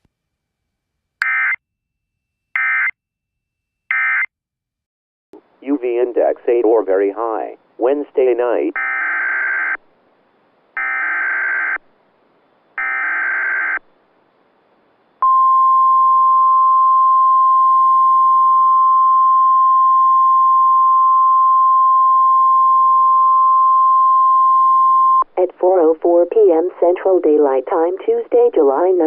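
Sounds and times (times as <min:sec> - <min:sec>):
steady warning alarm tone: 0:10.8 - 0:11.8, 0:12.8 - 0:13.8.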